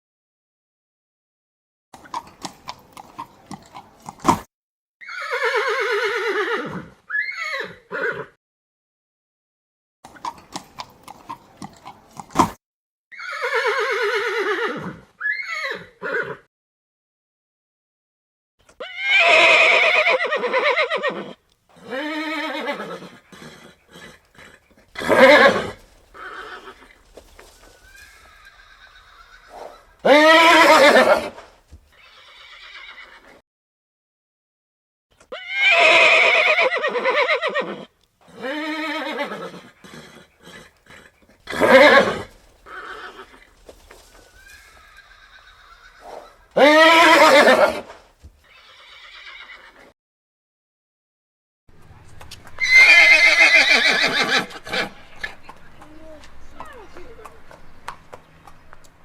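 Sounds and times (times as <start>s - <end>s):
horse hooves clopping: 2.0s - 4.5s, 10.1s - 12.6s, 23.2s - 32.0s, 40.3s - 48.5s, 51.7s - 59.0s
horse whinnying: 4.0s - 8.4s, 11.3s - 16.5s, 18.7s - 33.4s, 35.2s - 49.9s, 52.5s - 55.4s.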